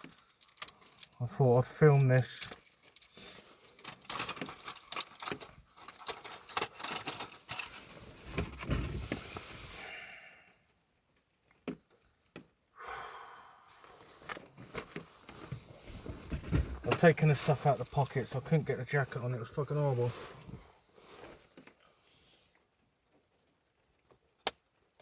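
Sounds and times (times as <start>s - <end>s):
clothing and gear rustling: 2.0s - 9.9s, 13.7s - 22.6s.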